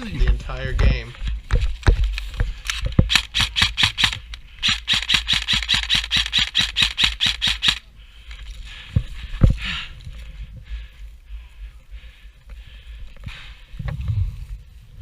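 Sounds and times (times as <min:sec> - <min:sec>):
airsoft guns firing rapidly: 0:03.1 - 0:07.8.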